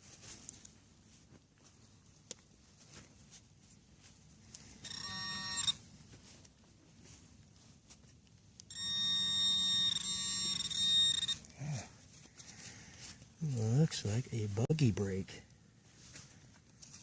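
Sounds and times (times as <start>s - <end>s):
metal detector electronic tones: 4.8s - 5.8s, 8.7s - 11.5s.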